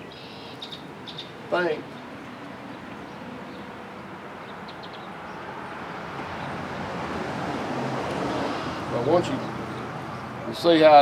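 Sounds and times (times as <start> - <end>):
faint bird chirps: 0.0 - 1.3
steady outdoor rush: 0.0 - 11.0.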